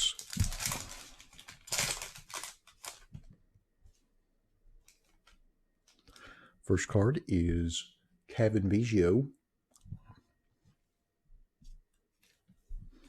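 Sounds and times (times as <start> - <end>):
foil wrapper ripping: 0.0 - 3.1.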